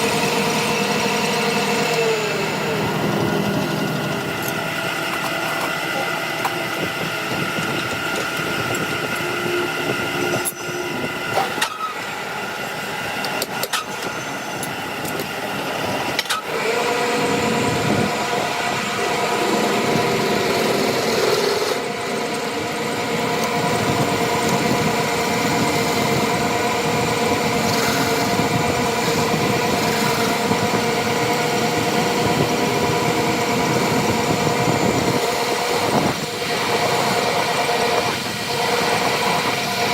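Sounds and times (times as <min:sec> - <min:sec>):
engine running: 0:00.0 - 0:39.9.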